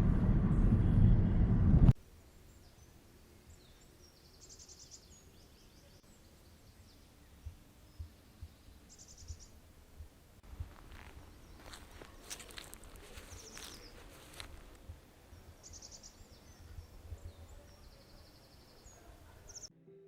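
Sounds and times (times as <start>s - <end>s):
soft low thumps: 10.0s - 15.0s.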